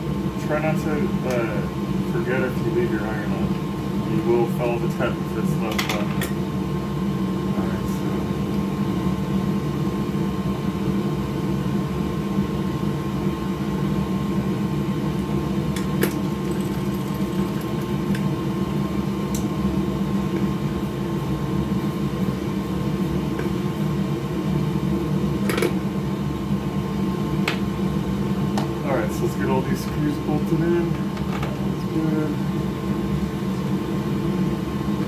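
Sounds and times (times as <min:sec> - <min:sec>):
fan motor humming: 0:00.0 - 0:35.0.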